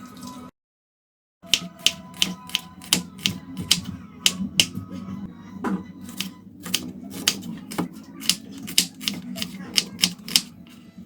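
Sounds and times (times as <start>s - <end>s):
knife chopping on cutting board: 1.5s - 4.7s, 6.1s - 10.5s.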